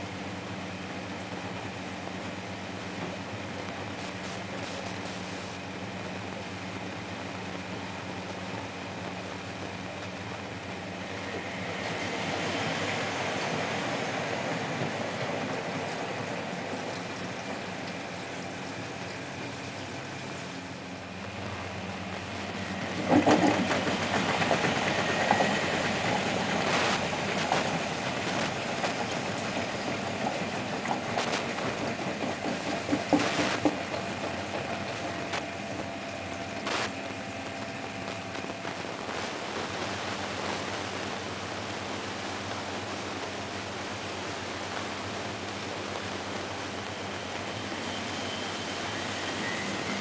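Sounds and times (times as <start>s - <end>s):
washing machine motor hum: 0.0s - 38.8s
knocks and clatters: 26.7s - 35.4s.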